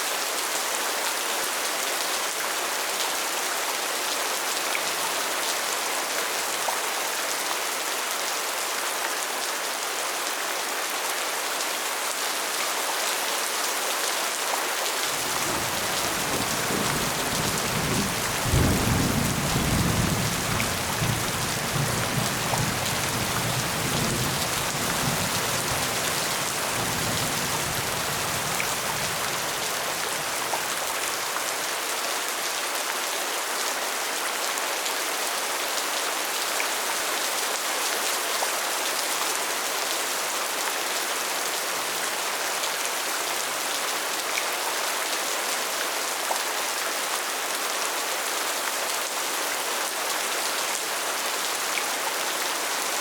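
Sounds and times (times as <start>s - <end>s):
heavy rain hissing: 15.1s - 31.0s.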